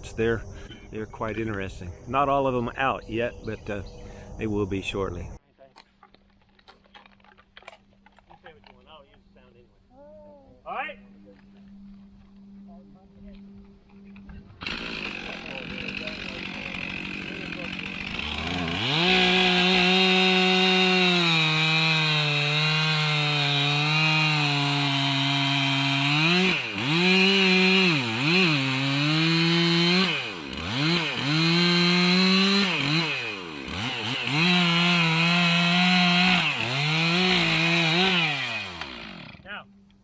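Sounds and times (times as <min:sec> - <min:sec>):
chainsaw cutting into tree: 0:14.6 - 0:39.5.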